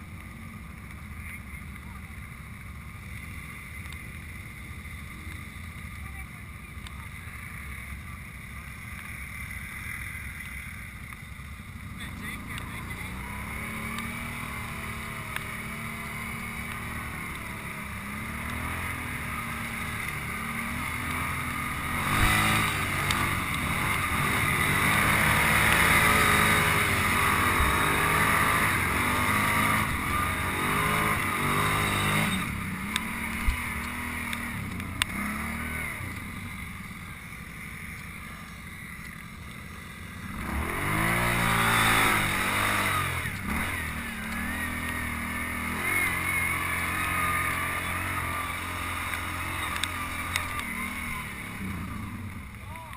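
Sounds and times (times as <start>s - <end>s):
quad bike engine revving: 11.6s - 52.9s.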